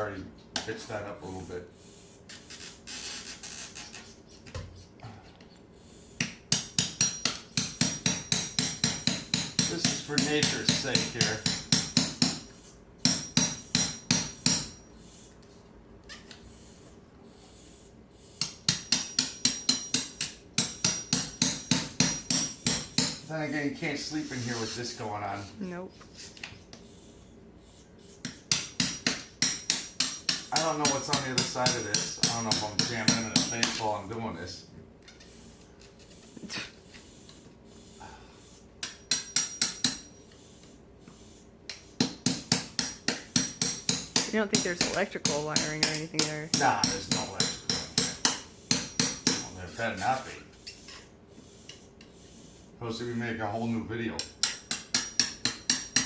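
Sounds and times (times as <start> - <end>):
hammer blows on plaster wall: 6.2 - 12.4, 13.0 - 14.8, 18.4 - 23.3, 28.3 - 34.0, 41.7 - 45.0, 45.6 - 49.6, 54.4 - 56.0.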